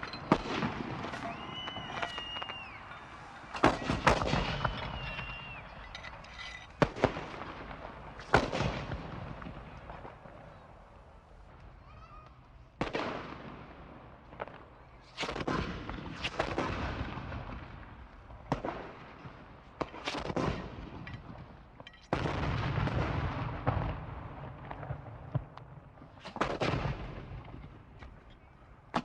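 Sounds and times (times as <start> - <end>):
rifle shots with echo: 0.0 - 6.0.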